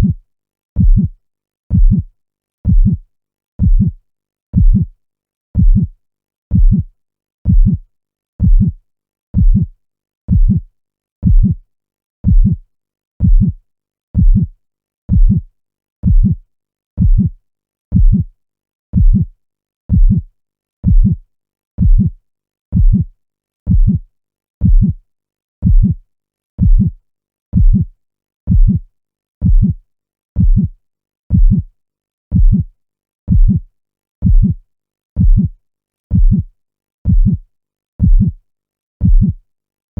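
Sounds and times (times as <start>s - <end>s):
heartbeat thumps: 0.8s - 1.1s, 1.7s - 2.1s, 2.7s - 3.0s, 3.6s - 4.0s, 4.6s - 4.9s, 5.6s - 5.9s, 6.5s - 6.9s, 7.5s - 7.8s, 8.4s - 8.8s, 9.4s - 9.7s, 10.3s - 10.6s, 11.2s - 11.6s, 12.2s - 12.6s, 13.2s - 13.6s, 14.2s - 14.5s, 15.1s - 15.4s, 16.0s - 16.4s, 17.0s - 17.3s, 18.0s - 18.3s, 19.0s - 19.3s, 19.9s - 20.2s, 20.8s - 21.2s, 21.8s - 22.1s, 22.8s - 23.1s, 23.7s - 24.0s, 24.6s - 25.0s, 25.6s - 26.0s, 26.6s - 27.0s, 27.6s - 27.9s, 28.5s - 28.8s, 29.4s - 29.8s, 30.4s - 30.7s, 31.3s - 31.6s, 32.3s - 32.7s, 33.3s - 33.6s, 34.2s - 34.6s, 35.2s - 35.5s, 36.1s - 36.5s, 37.1s - 37.4s, 38.0s - 38.4s, 39.0s - 39.4s.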